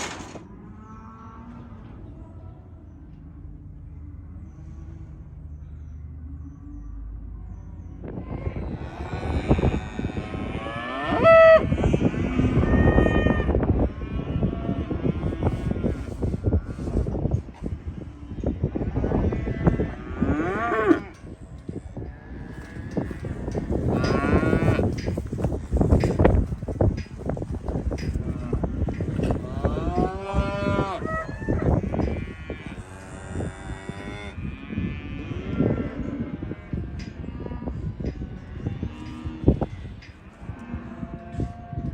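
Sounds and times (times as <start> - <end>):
clatter of knocks and bangs: 0.0 - 0.5
cattle bawling and mooing: 8.5 - 41.9
loud high-pitched animal call: 30.7 - 31.8.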